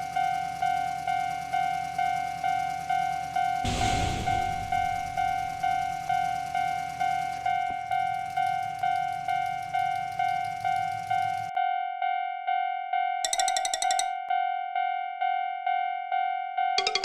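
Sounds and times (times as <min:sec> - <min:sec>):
railroad crossing bell ringing: 0:00.0 - 0:11.5, 0:13.2 - 0:14.2.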